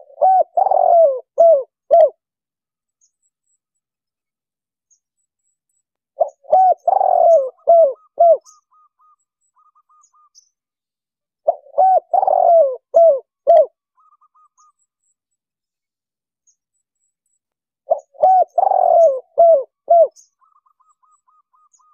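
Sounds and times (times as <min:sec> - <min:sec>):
dove cooing: 0:00.0 - 0:02.2, 0:06.2 - 0:10.3, 0:11.4 - 0:14.7, 0:17.9 - 0:21.9.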